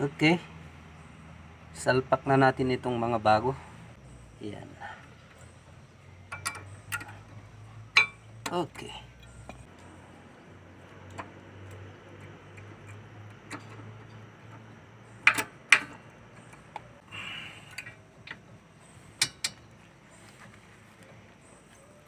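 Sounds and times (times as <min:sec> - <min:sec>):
brake pads clacking into bracket: 0:11.0 - 0:17.0.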